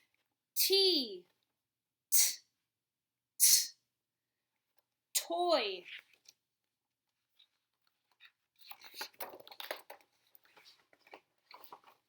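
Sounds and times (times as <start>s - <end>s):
book page rustling: 8.2s - 12.0s.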